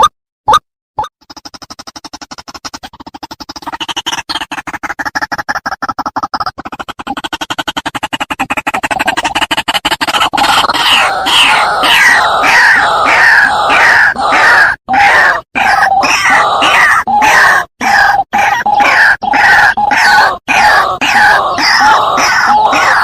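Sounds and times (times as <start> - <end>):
waterhen calling harshly: 10.1 - 23.0.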